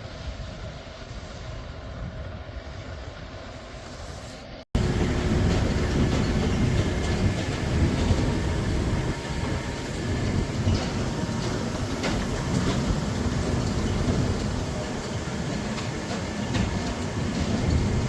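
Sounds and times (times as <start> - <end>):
heavy machinery rumbling: 4.8 - 18.0
machinery rattles and clanks: 4.8 - 18.0.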